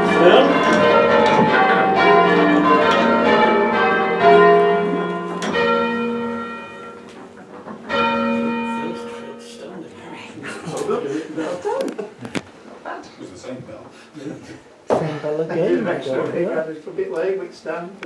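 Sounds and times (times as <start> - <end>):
church bells ringing: 0.0 - 10.0.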